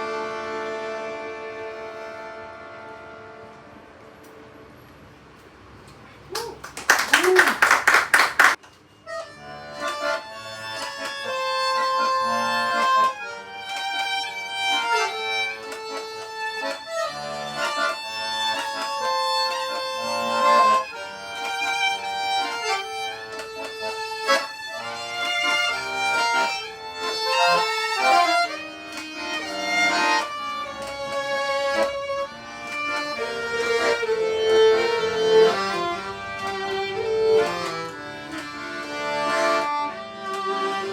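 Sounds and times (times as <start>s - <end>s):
acoustic folk duo playing: 10.9s - 40.9s.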